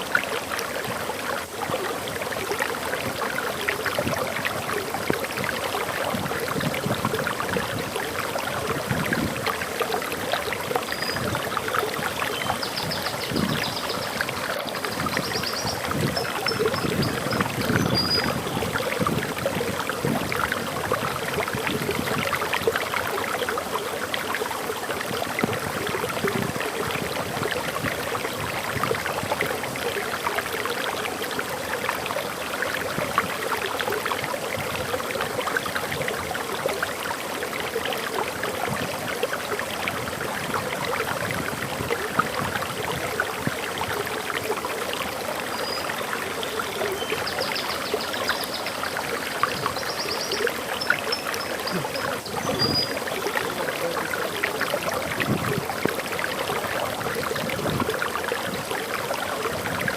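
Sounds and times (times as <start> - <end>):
waterfall splashing: 43.2 - 59.7
bird chirping: 49.6 - 53.0.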